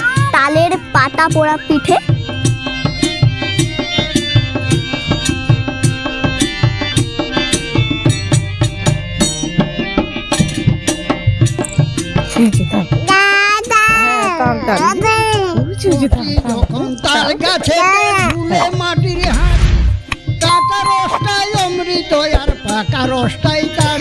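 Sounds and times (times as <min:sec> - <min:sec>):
sustained melodic instrument notes: 0:20.4 - 0:22.3.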